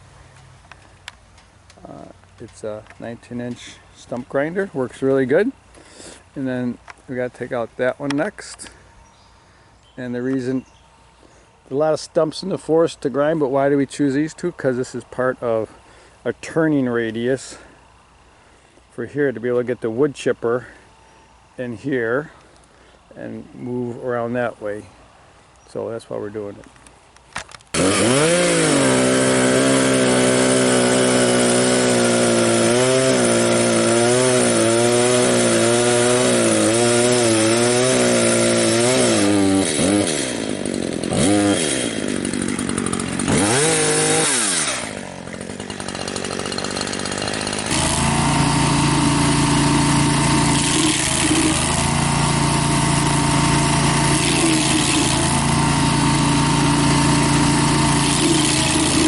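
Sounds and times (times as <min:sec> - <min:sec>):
small gasoline engine revving: 0:27.7 - 0:59.0.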